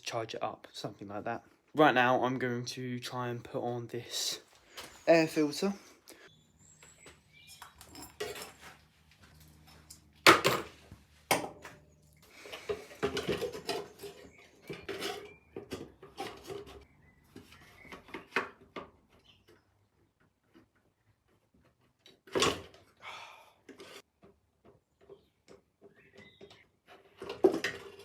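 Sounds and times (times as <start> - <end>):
parts knocking and rattling: 6.8 - 19.6, 23.7 - 28.0.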